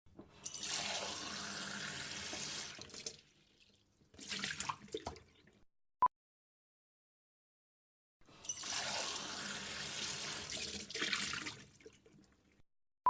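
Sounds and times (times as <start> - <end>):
water pouring into a cup: 0.4 - 5.5, 8.4 - 12.3.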